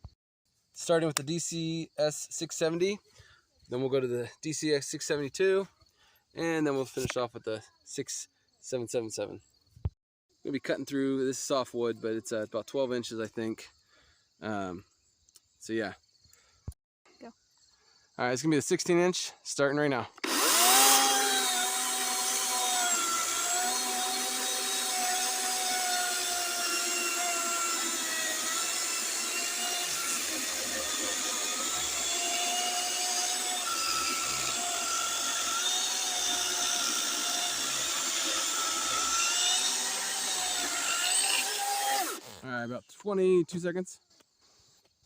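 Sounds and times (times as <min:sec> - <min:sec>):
chainsaw cutting through log: 0:20.2 - 0:42.4.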